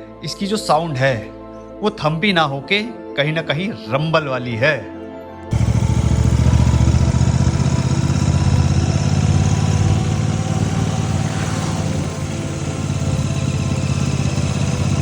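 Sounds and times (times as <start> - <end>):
motorcycle engine rumbling: 5.5 - 15.0.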